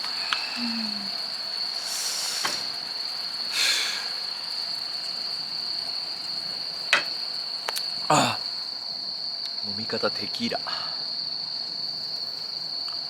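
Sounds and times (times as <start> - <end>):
short hissing sounds: 0.0 - 5.1
insects trilling: 0.0 - 13.0.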